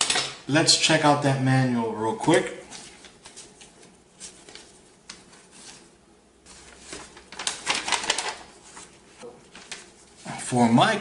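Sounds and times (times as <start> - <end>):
paper pages rustling: 2.7 - 10.6.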